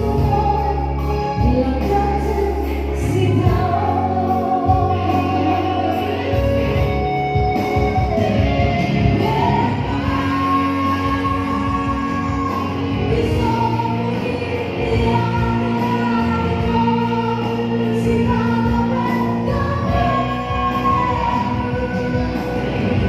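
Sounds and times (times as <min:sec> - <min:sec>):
instrumental accompaniment: 0:00.0 - 0:23.0
person singing long notes: 0:07.7 - 0:23.0.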